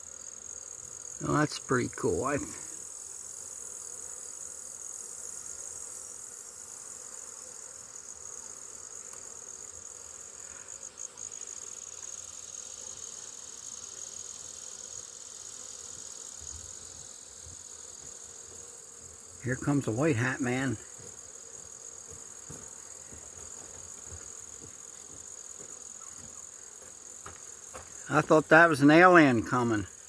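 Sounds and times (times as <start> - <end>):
crickets chirring: 0.0 - 30.0
honeybees humming: 0.5 - 3.0, 14.8 - 30.0.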